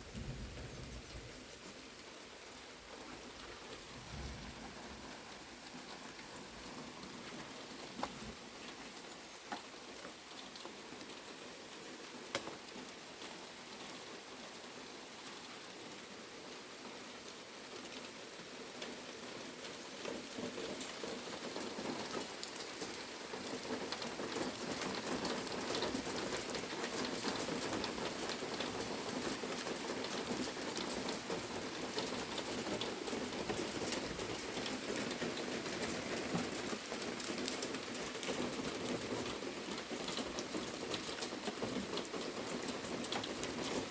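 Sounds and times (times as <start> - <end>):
rain falling steadily: 0.0 - 43.9
raindrops ticking on a surface: 0.0 - 43.9.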